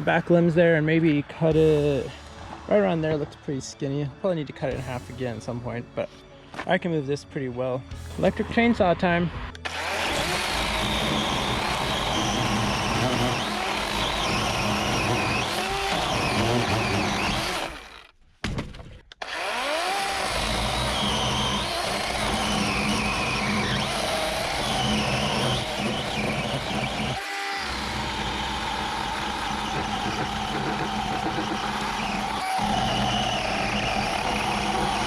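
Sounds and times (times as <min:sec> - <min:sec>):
electric chainsaw cutting wood: 0:09.6 - 0:18.1, 0:19.2 - 0:35.0.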